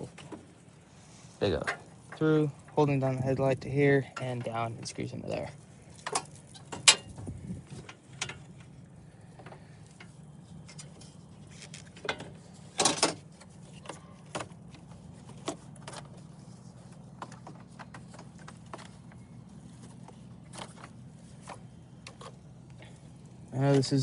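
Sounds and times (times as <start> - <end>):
steady low hum: 0.0 - 24.0
clicks and knocks on car parts: 11.9 - 16.3.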